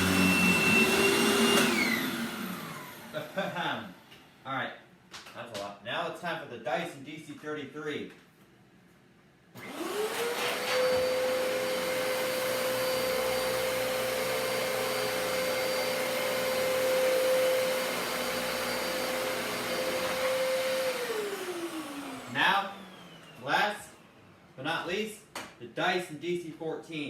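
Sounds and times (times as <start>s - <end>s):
vacuum cleaner motor whine: 0.0s - 4.1s, 9.6s - 24.4s.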